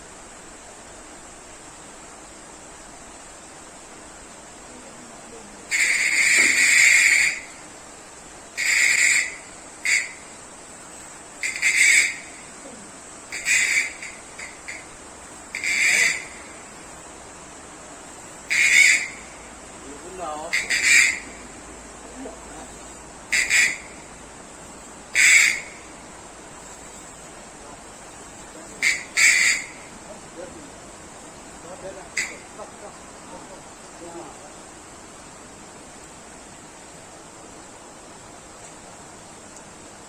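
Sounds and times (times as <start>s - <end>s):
fishing reel squealing: 5.8s - 7.5s, 11.4s - 12.3s, 13.3s - 14.9s, 15.5s - 17.0s, 18.5s - 19.2s, 20.4s - 21.5s, 28.8s - 29.8s.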